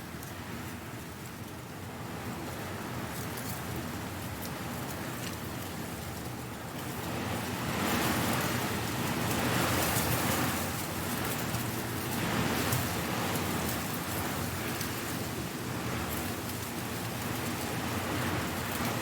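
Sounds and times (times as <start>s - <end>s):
strong wind rustling leaves: 0.4s - 19.0s
crackle of leaves: 4.4s - 19.0s.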